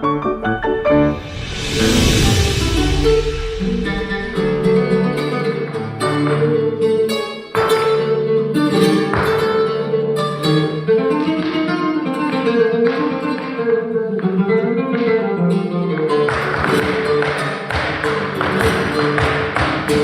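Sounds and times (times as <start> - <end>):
plucked acoustic guitar: 3.9 - 20.0.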